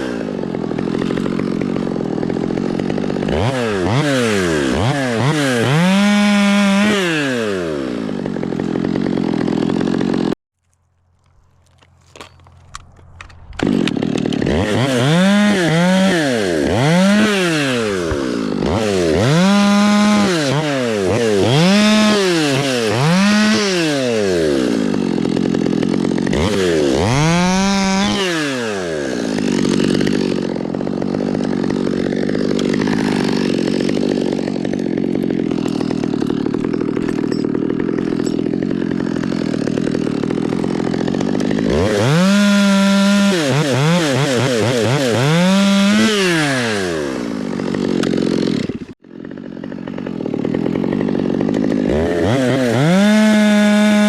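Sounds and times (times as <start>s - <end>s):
chainsaw revving and cutting wood: 0.0s - 54.0s.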